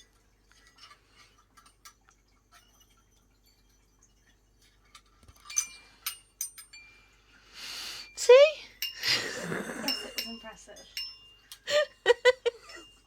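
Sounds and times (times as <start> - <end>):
wind chime tinkling: 5.4 - 13.0.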